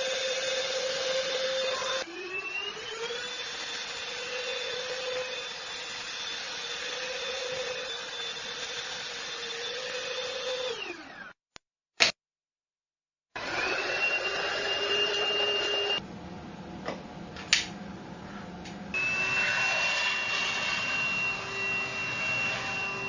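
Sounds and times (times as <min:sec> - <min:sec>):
handheld vacuum cleaner whine: 0:00.0 - 0:11.4, 0:13.4 - 0:16.0, 0:19.0 - 0:23.0.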